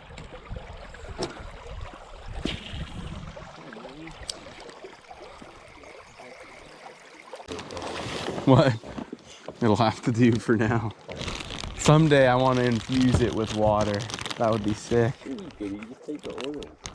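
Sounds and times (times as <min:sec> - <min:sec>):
river water flowing: 0:00.0 - 0:08.4.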